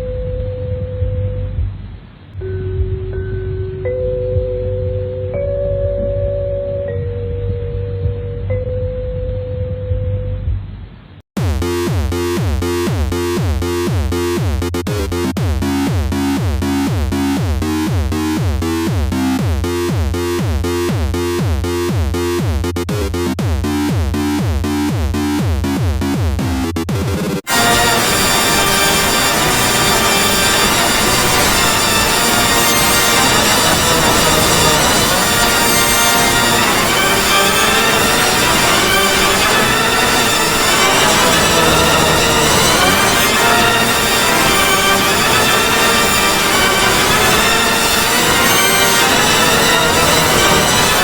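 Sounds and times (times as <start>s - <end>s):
low droning rumble: 0.1s - 5.2s
steady electronic alarm tone: 11.4s - 14.8s, 27.5s - 51.0s.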